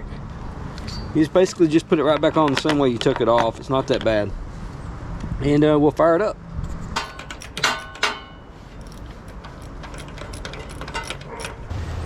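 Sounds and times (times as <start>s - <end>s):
metal hand tools clinking: 7.0s - 11.6s.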